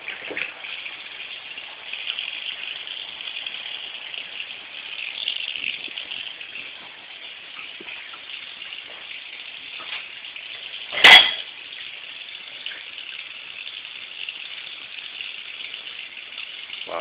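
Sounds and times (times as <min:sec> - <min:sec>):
tap water running into sink: 0:00.0 - 0:17.0
dishware clattering: 0:10.9 - 0:11.5.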